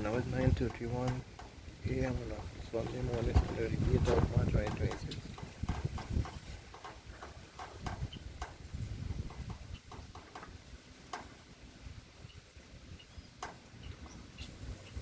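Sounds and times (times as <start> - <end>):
light clicks and taps: 0.0 - 8.6
wind buffeting microphone: 0.0 - 15.0.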